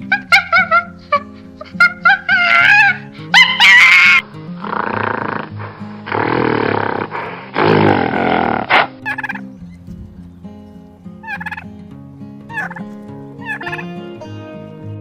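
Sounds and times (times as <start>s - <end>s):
turkey gobbling: 0.0s - 4.2s, 8.7s - 9.5s, 11.2s - 11.7s, 12.5s - 13.8s
harsh animal cries: 1.8s - 9.4s, 13.4s - 14.0s
soft background music: 9.0s - 15.0s.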